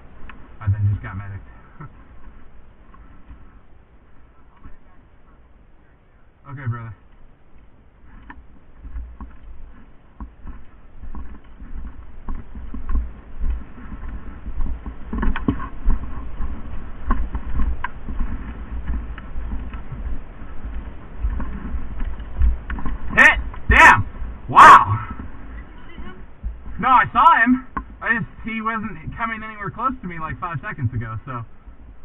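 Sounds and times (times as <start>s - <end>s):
low rumble: 0.0s - 32.0s
faint clicking: 7.0s - 23.7s
rustling: 7.0s - 32.0s.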